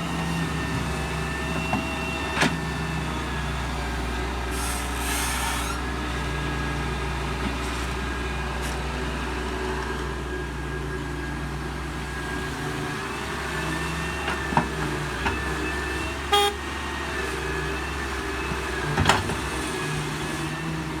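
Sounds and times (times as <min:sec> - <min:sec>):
horn toot: 0:16.3 - 0:16.6.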